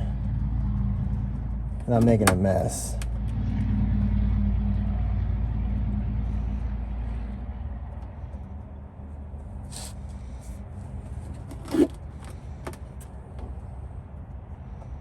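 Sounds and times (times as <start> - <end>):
low rumble: 0.0 - 15.0
drain plug clicks and scrapes: 9.7 - 13.6.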